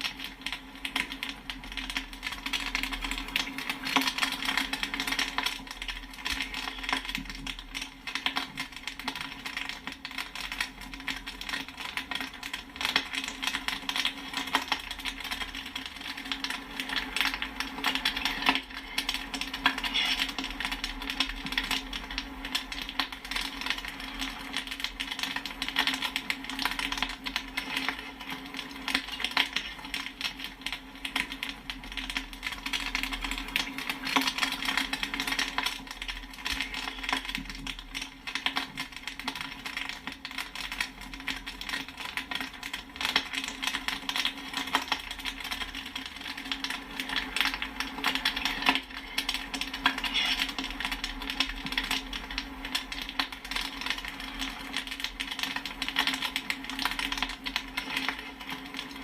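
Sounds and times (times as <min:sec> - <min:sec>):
popcorn popping: 0:00.0 - 0:59.0.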